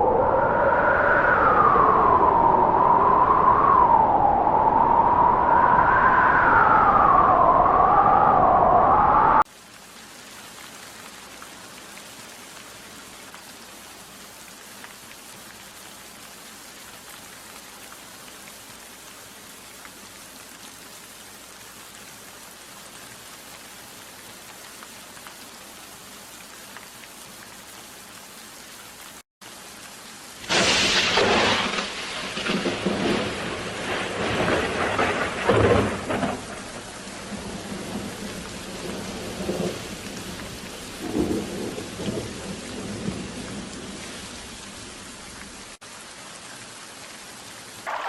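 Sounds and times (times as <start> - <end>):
steady rain falling: 0.0 - 48.0
loud thunder: 30.5 - 38.1.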